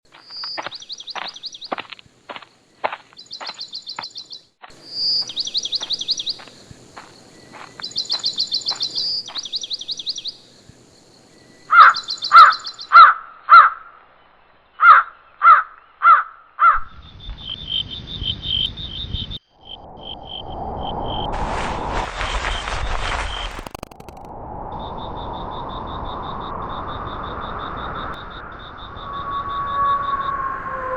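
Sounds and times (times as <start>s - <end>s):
songbird trills: 0.1s - 10.7s, 11.7s - 19.4s
harsh crow-like caws: 11.7s - 14.0s, 14.8s - 16.8s
low rumble: 16.8s - 30.9s
pulsing insect-like buzz: 24.8s - 30.9s.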